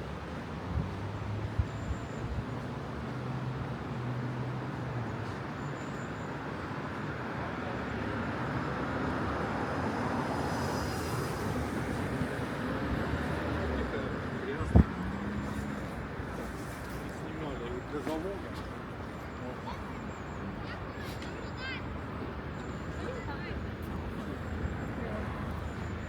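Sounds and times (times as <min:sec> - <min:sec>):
passing vehicles: 0:00.0 - 0:26.0.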